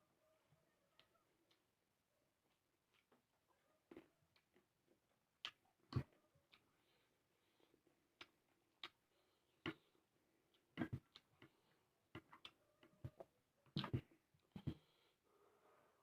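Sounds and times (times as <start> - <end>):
chewing mouth clicks and smacks: 5.4 - 6.7, 8.2 - 9.0, 10.5 - 12.6.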